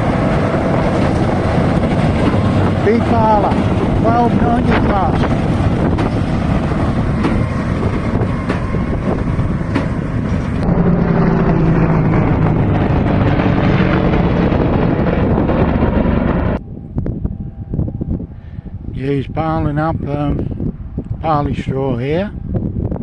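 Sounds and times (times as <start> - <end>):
baler machinery working: 0.0 - 16.6
low engine hum: 0.0 - 21.4
wind on microphone: 0.0 - 23.0.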